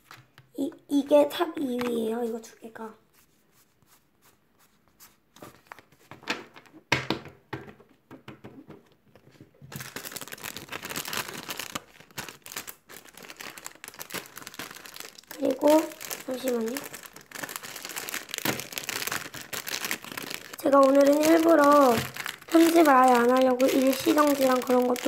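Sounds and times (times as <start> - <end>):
plastic bags crinkling: 9.7 - 25.0.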